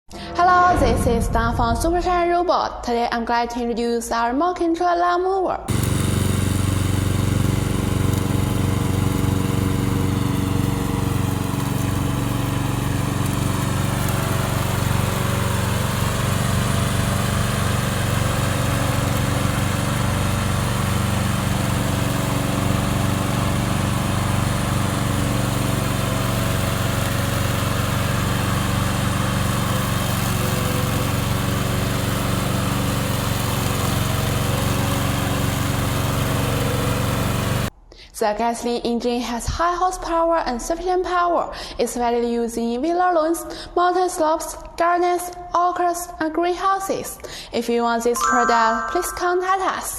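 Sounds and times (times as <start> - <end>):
lawn mower engine running: 5.7 - 37.7.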